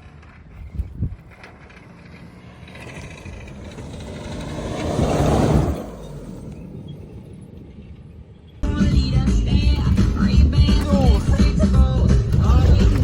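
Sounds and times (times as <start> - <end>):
motor vehicle driving past: 0.0 - 8.6.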